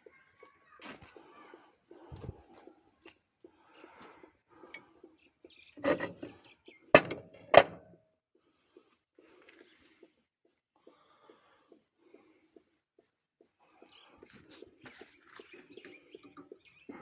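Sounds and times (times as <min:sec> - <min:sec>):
metal scrape: 0:05.8 - 0:06.3, 0:07.0 - 0:07.8
sharp metallic knocks: 0:07.0 - 0:07.9.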